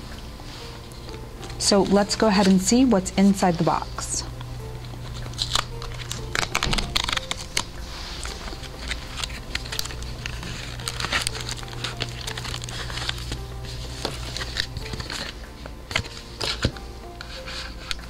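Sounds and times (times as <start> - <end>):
paper and plastic crinkling: 4.8 - 18.0.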